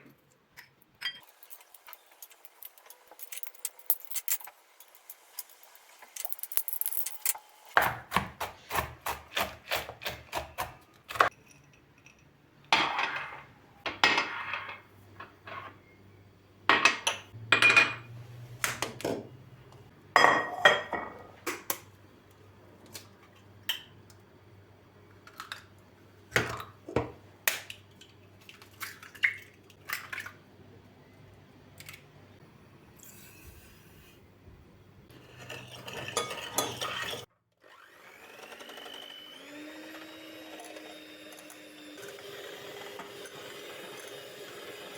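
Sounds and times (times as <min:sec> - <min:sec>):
kitchenware clattering: 0:01.0 - 0:08.0, 0:11.1 - 0:15.9, 0:16.7 - 0:19.4, 0:20.2 - 0:21.8, 0:35.1 - 0:37.3.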